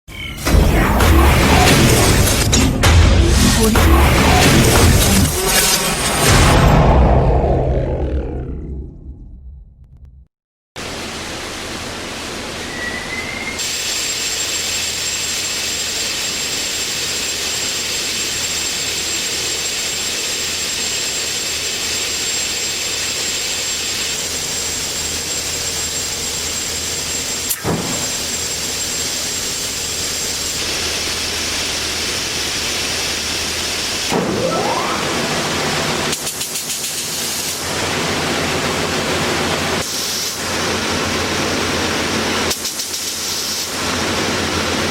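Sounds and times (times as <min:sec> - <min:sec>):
thin high whine: 0:12.2 - 0:17.5, 0:21.8 - 0:36.5.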